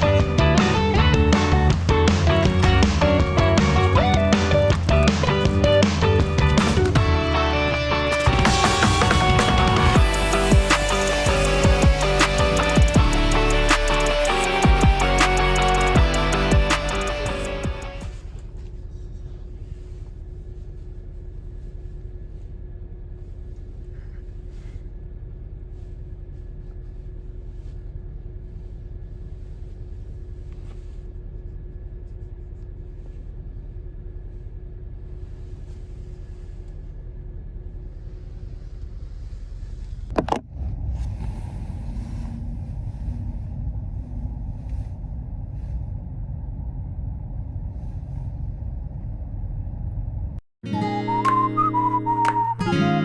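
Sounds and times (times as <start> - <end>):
car rumbling on the move: 0.0 - 50.4.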